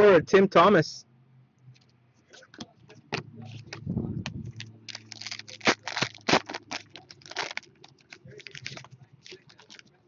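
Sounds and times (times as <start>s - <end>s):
foil wrapper crinkling: 4.5s - 10.0s.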